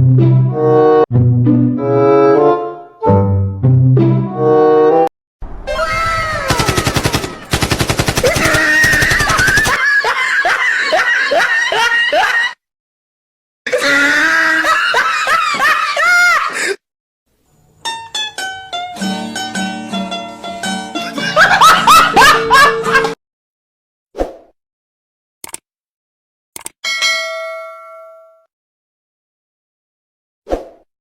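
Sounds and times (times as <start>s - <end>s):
automatic gunfire: 6.5s - 9.8s.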